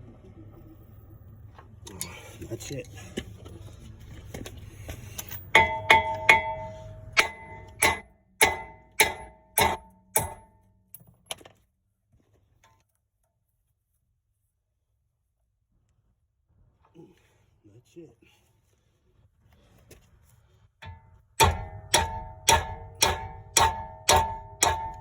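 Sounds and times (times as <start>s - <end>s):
hammer striking steel: 5.5s - 11.0s, 20.8s - 25.0s.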